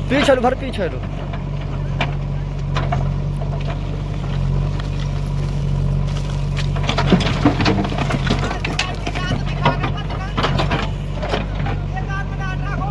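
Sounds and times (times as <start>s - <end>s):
diesel engine running: 0.0s - 12.9s.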